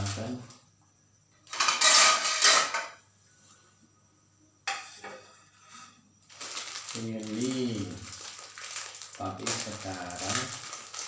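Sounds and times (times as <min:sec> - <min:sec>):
kitchenware scraping clatter: 0:01.5 - 0:03.0.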